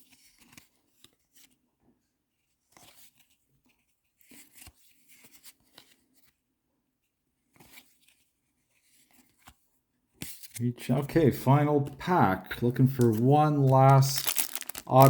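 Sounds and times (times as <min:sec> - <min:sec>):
trading cards rustling: 0:10.3 - 0:15.0.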